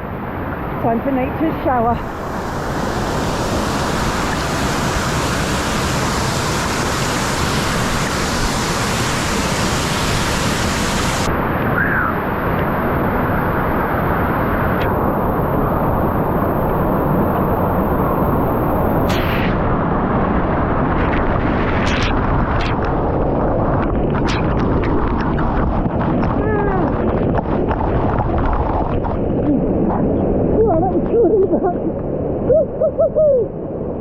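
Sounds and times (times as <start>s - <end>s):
waterfall rushing: 1.2s - 19.3s.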